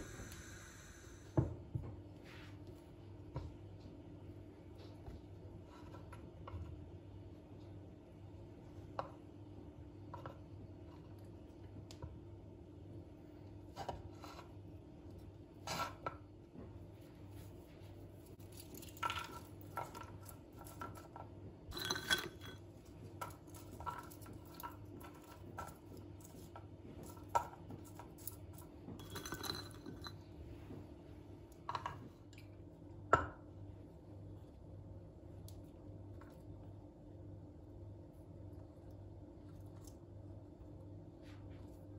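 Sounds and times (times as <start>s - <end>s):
faint steady hum: 0.0s - 41.9s
dishes and utensils clinking: 21.7s - 22.6s, 29.0s - 30.2s.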